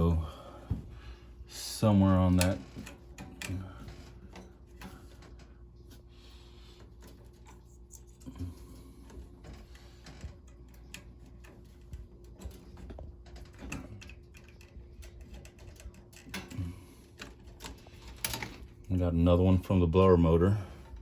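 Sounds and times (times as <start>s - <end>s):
steady low hum: 0.0s - 21.0s
wire connectors clicking: 2.3s - 5.4s.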